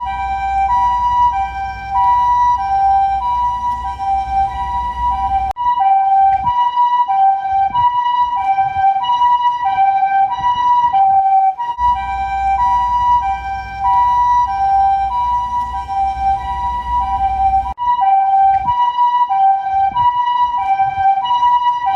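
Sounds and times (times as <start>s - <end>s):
low rumble: 0.0s - 5.5s, 11.8s - 17.8s
two-tone ambulance siren: 0.0s - 21.9s.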